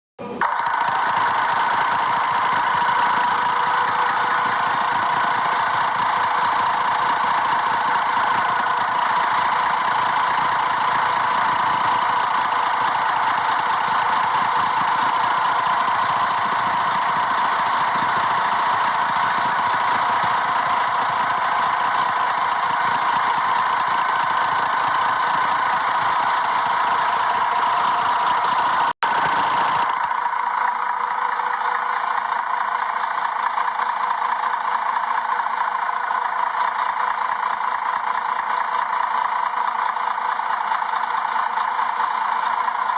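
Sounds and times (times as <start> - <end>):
car engine idling: 0.4 - 39.4.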